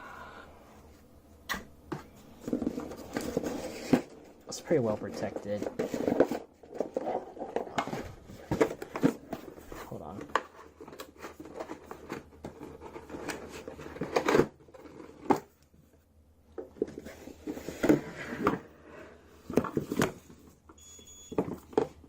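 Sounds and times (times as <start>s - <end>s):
packaging rustling: 2.4s - 15.6s.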